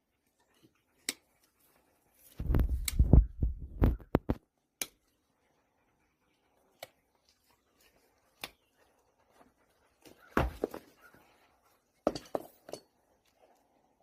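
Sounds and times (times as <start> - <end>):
hoof nippers snapping hoof: 8.3 - 8.8.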